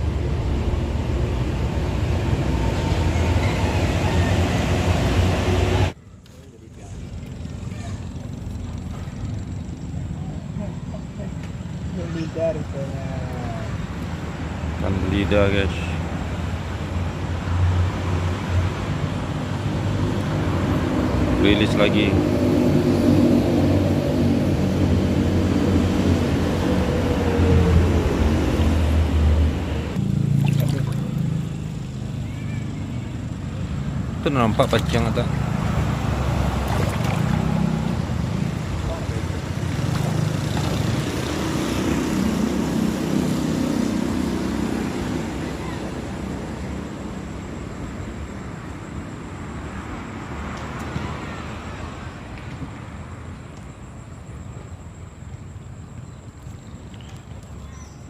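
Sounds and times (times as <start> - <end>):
passing engine drone: 0.0 - 6.0
vehicle rumble: 0.0 - 58.0.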